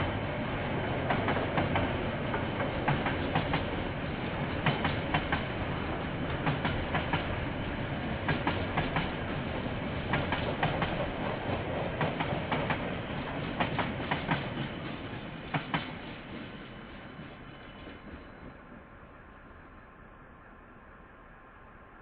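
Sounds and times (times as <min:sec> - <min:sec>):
train wheels clicking over rail joint: 0:04.5 - 0:05.6, 0:10.1 - 0:16.7.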